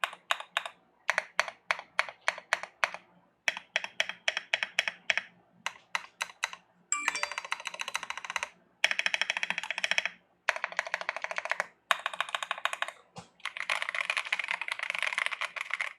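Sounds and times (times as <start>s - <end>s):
mechanical keyboard clacking: 0.0s - 15.9s.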